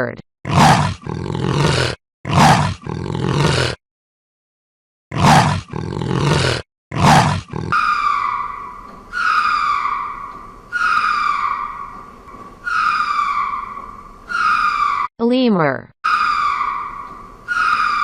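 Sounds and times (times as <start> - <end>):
leopard rasping call: 5.1 - 15.1, 16.1 - 18.0
falling whining calls: 7.6 - 15.1, 16.0 - 18.0.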